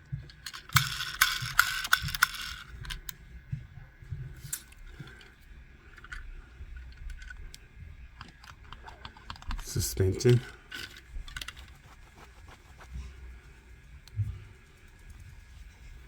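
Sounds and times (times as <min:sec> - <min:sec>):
small objects clicking and rattling: 0:00.3 - 0:03.0.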